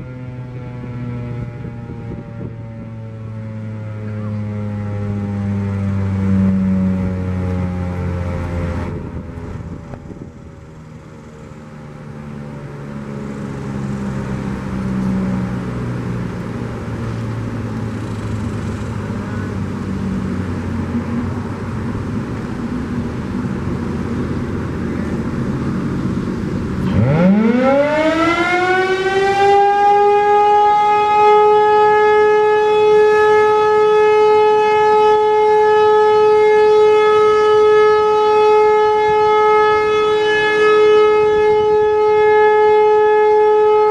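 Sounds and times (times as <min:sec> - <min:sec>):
warning siren winding up: 0:26.8 - 0:43.9.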